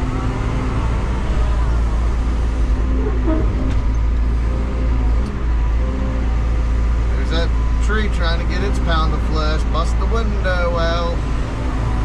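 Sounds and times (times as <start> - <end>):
excavator diesel engine: 0.0 - 12.0
machine knocks and squeaks: 2.9 - 4.2.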